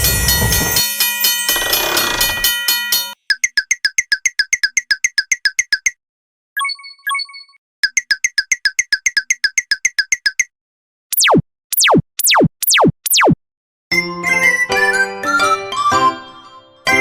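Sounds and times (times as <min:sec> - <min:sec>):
rapid electronic beeps: 0:11.1 - 0:13.4.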